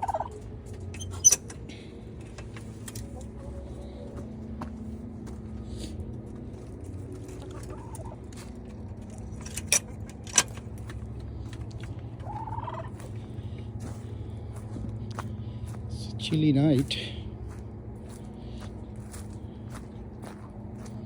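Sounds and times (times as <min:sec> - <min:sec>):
steady low hum: 0:00.0 - 0:21.0
chickens clucking softly: 0:07.5 - 0:08.2, 0:12.2 - 0:13.1.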